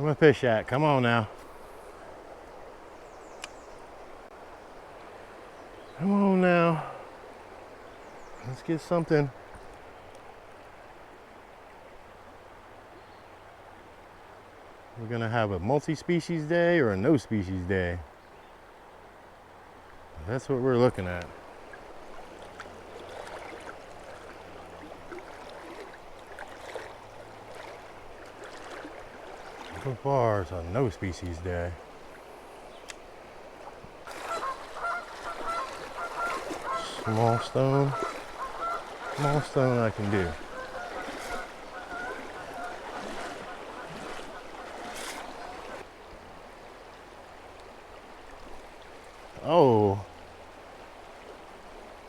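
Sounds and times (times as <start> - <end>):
river water flowing: 0.0 - 52.0
faint ticks: 3.4 - 3.6, 9.5 - 10.2.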